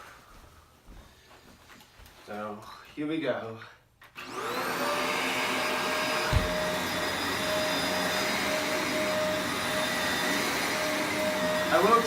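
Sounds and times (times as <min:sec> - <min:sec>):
vacuum cleaner on carpet: 0:04.2 - 0:12.0
dull low thump: 0:06.3 - 0:06.6.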